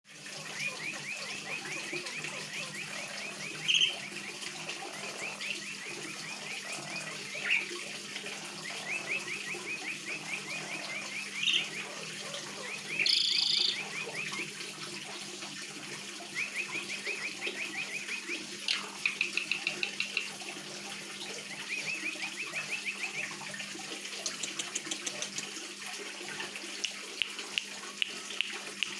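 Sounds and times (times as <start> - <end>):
shrill bird calls: 0.4 - 7.8, 8.6 - 14.5, 16.3 - 20.3
starling chattering calls: 0.4 - 14.5, 16.3 - 20.4.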